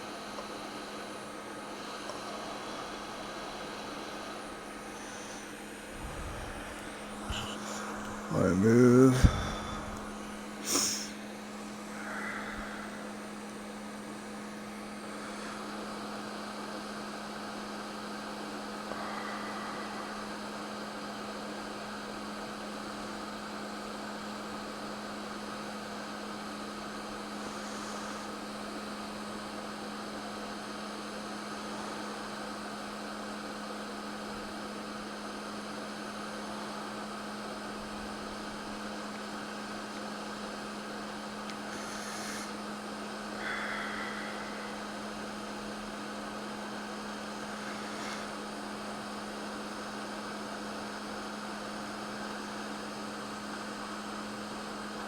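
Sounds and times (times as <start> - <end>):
airflow hiss: 0.0 - 16.4, 41.5 - 50.0
hot air station humming: 0.0 - 55.0.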